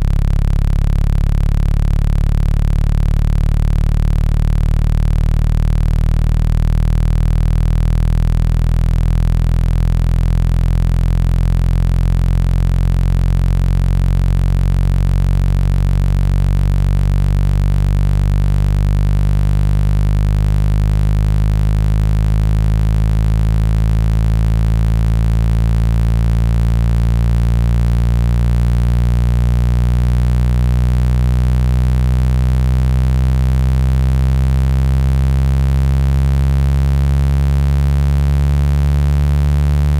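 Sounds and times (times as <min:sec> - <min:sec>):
low electronic buzzing tone: 0:00.0 - 0:39.9.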